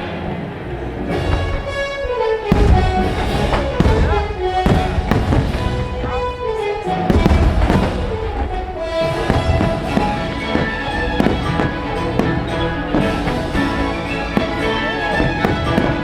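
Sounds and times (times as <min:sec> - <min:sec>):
deep firework booms: 0:00.0 - 0:16.0
fireworks bursting: 0:00.0 - 0:16.0
loud show music: 0:02.4 - 0:16.0.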